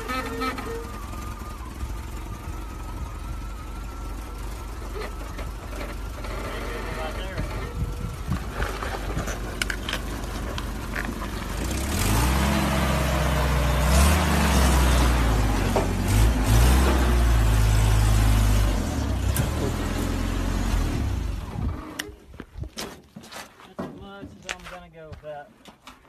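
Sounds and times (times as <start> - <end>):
engine revving hard: 11.6 - 21.8.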